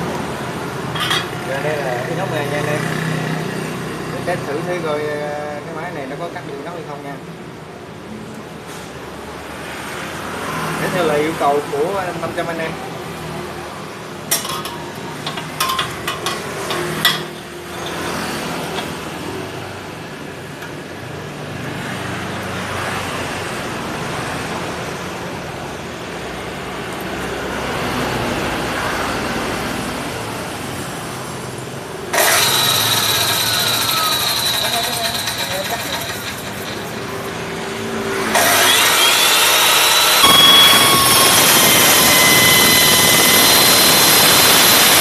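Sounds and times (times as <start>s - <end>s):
cut-off saw running: 0.0s - 2.9s, 14.3s - 19.5s, 32.1s - 45.0s
saw cutting metal with high ring: 0.9s - 2.2s, 14.3s - 19.5s, 32.1s - 45.0s.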